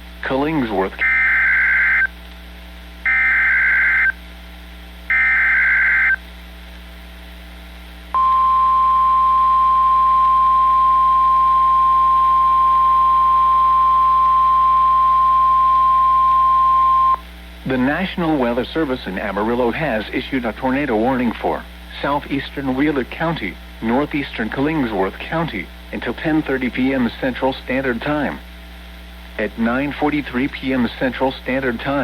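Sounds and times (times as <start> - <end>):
steady alarm tone: 1.0 - 2.1, 3.0 - 4.2, 5.1 - 6.2, 8.2 - 17.2
warbling data tones: 1.0 - 2.1, 3.1 - 4.2, 5.1 - 6.2.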